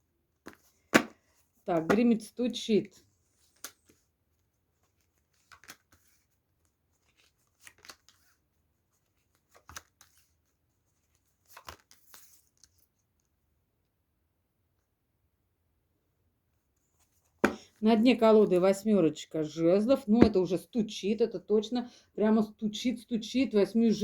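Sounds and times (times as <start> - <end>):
cards being shuffled: 0.4 - 2.2, 3.4 - 4.0, 4.8 - 8.4, 11.0 - 12.7, 17.4 - 17.7.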